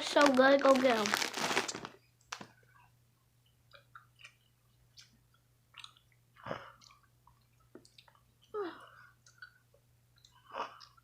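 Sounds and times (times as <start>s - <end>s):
person chewing candy: 3.7s - 11.0s.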